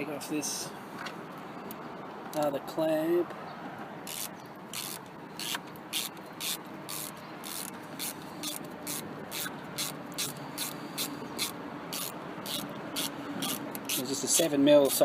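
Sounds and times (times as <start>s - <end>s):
socket ratchet clicking: 4.1s - 14.0s.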